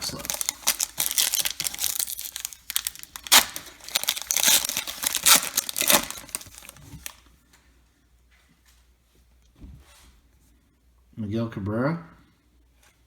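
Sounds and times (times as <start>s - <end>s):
card pack wrapper tearing: 0.0s - 7.2s.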